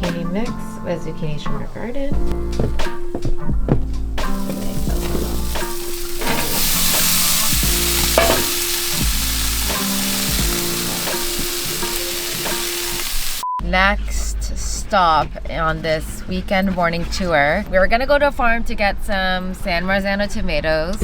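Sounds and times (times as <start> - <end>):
background music: 0.0 - 21.0
vegetables sizzling in a pan: 4.3 - 13.4.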